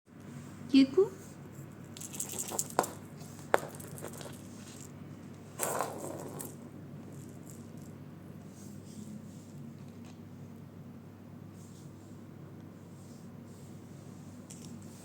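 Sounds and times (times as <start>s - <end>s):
rustling scrape: 1.2s - 10.2s.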